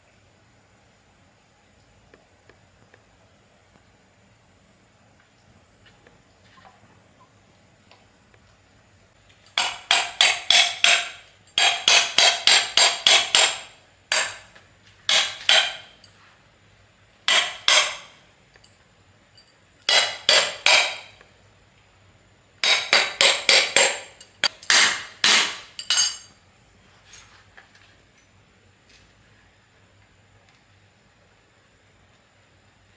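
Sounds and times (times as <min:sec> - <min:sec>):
hammer striking metal: 0:09.6 - 0:14.5, 0:15.1 - 0:16.1, 0:17.3 - 0:18.2, 0:19.9 - 0:21.2, 0:22.6 - 0:26.3.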